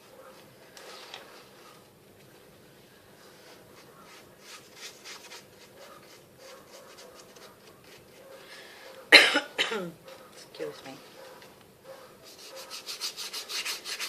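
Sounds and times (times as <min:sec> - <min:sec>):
paintbrush scratching on cardboard: 0:03.2 - 0:08.4, 0:12.2 - 0:14.0.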